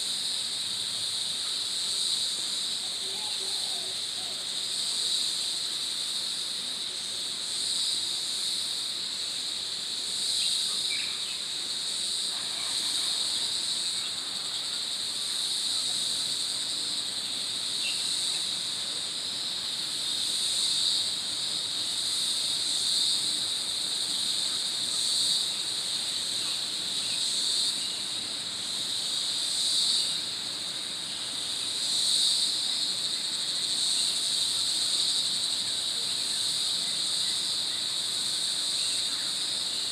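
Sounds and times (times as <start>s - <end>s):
insect chorus drone: 0.0s - 39.9s.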